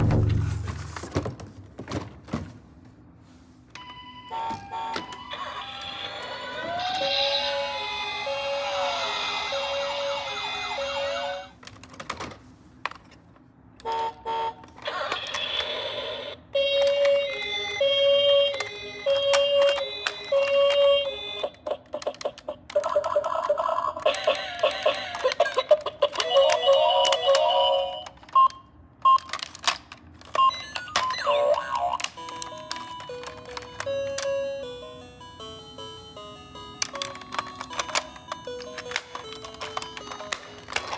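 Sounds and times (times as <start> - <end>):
plastic clicks and clatter: 11.6 - 13.3, 29.1 - 31.1, 36.8 - 40.9.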